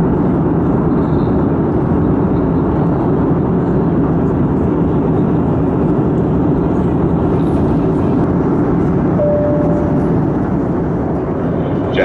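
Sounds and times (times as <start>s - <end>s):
airliner cabin engine rush: 0.0s - 12.0s
short single tone: 9.2s - 10.5s.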